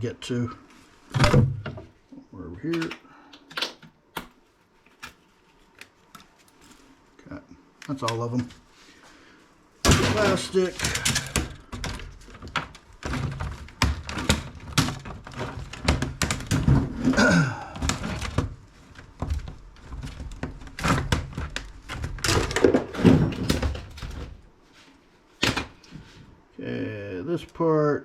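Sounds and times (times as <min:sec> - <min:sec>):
laptop parts knocking and clattering: 0:09.8 - 0:24.4.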